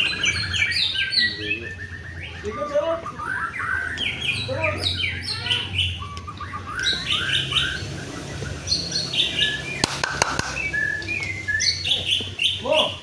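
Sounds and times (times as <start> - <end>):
bird singing chirping phrases: 0.0 - 13.0
sharp clicks: 9.8 - 10.8.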